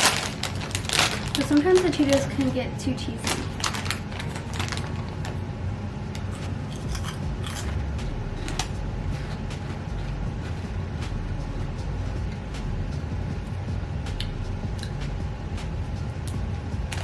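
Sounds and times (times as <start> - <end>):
crunching and chewing cheese puffs: 0.0 - 2.4, 3.2 - 5.4, 6.2 - 10.6.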